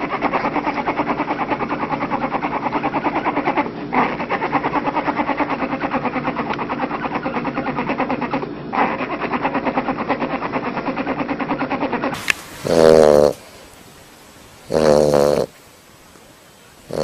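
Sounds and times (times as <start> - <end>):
animal snoring: 12.1 - 13.4, 14.6 - 15.6.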